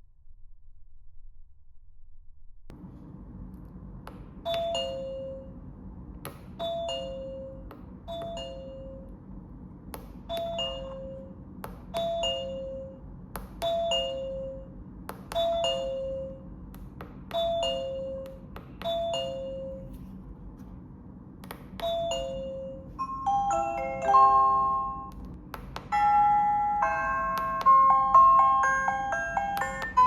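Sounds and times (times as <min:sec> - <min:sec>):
two-note doorbell chime: 0:21.8 - 0:25.1, 0:25.9 - 0:30.0.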